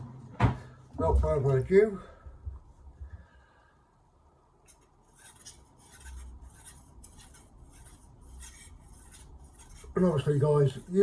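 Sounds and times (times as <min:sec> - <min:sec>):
knife edge rasping: 0:04.7 - 0:11.0.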